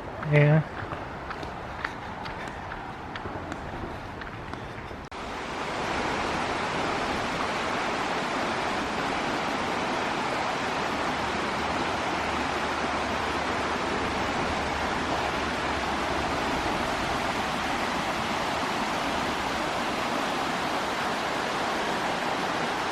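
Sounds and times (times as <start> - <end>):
water rushing: 5.1 - 22.9.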